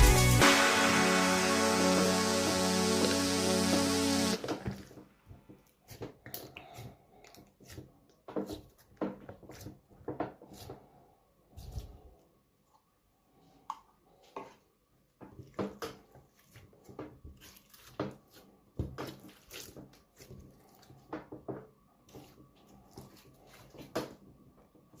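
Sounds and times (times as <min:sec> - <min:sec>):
slime squelching: 0:05.6 - 0:09.9, 0:15.3 - 0:21.1, 0:22.0 - 0:24.2.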